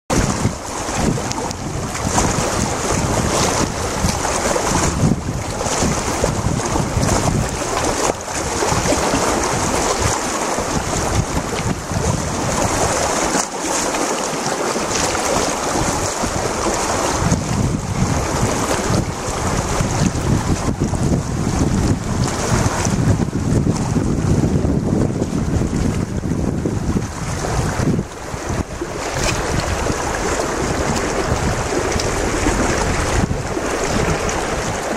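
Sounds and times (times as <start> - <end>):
river water rushing: 0.1 - 34.9
wind rumble on microphone: 0.1 - 34.9.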